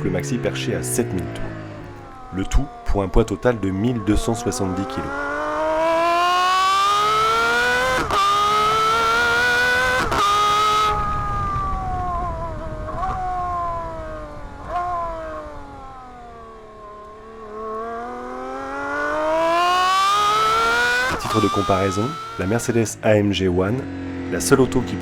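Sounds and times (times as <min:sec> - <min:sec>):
car engine revving high: 0:00.0 - 0:25.0.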